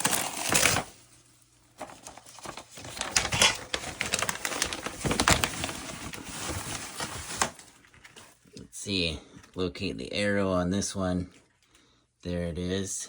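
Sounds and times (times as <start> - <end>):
furnace filter rustling and crackling: 0.0 - 8.6.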